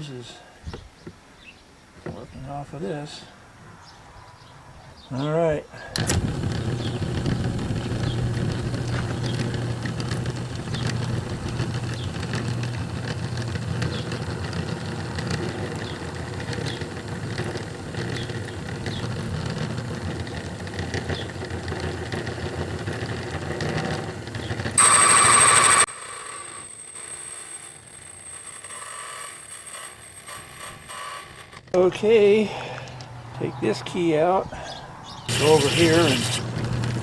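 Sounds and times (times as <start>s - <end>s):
high-pitched cutting screech: 24.8s - 25.9s, 35.3s - 36.4s
key-cutting machine running: 35.3s - 36.4s.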